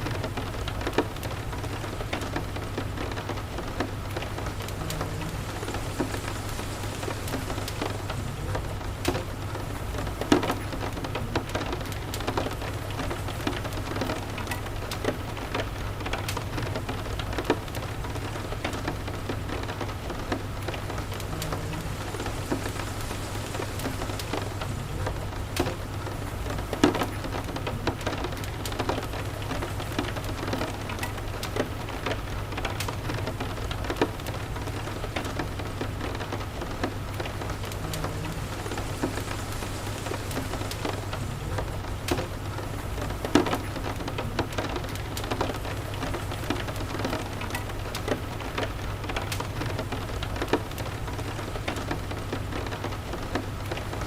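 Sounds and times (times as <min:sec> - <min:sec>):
steady rain: 0:00.0 - 0:54.0
wood fire crackling: 0:00.0 - 0:54.0.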